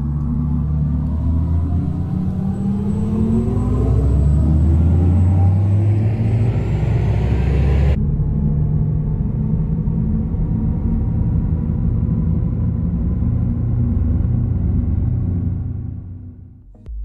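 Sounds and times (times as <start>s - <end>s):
electric car driving: 0.0s - 8.0s.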